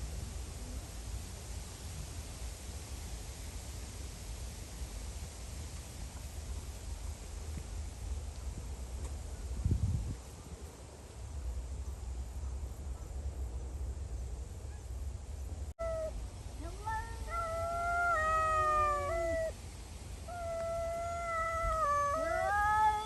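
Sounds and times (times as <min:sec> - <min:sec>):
low wind-like rumble: 0:00.0 - 0:23.0
cats yowling: 0:15.8 - 0:19.6, 0:20.3 - 0:23.0.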